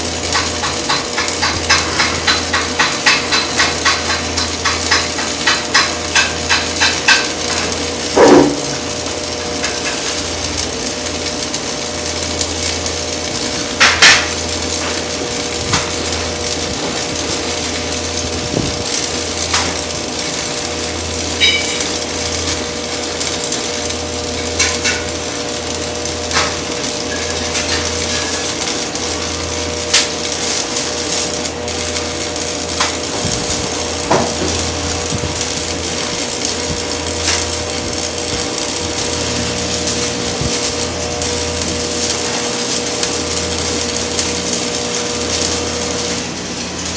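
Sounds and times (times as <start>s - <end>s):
machine hum: 0.0s - 46.9s
metal clanks and knocks: 0.3s - 8.9s, 21.4s - 22.0s, 32.8s - 35.6s.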